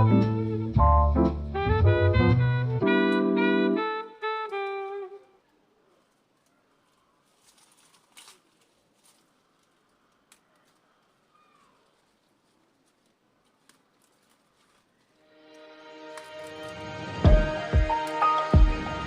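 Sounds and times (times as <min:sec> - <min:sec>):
instrumental music with held notes: 0:00.0 - 0:05.4, 0:15.2 - 0:19.0
faint rustle: 0:04.5 - 0:15.3
faint clicks: 0:09.1 - 0:14.9.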